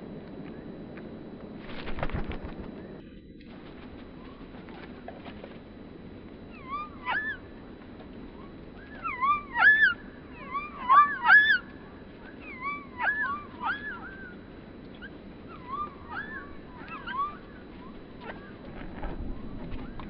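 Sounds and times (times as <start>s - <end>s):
bird whistling calls: 6.5s - 7.5s, 8.4s - 11.7s, 12.3s - 14.4s, 15.0s - 18.6s.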